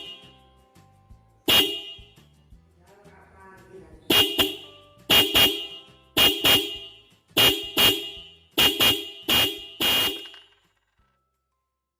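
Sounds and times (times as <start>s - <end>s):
electric horn toots: 1.5s - 2.1s, 4.1s - 10.4s.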